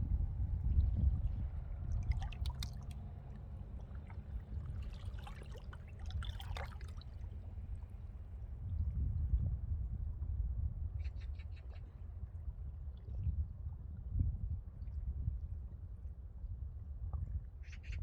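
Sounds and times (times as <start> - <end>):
wind rumble on microphone: 0.0 - 18.0
seawater lapping at shore: 0.8 - 8.7
water drips and splashes: 1.7 - 8.3.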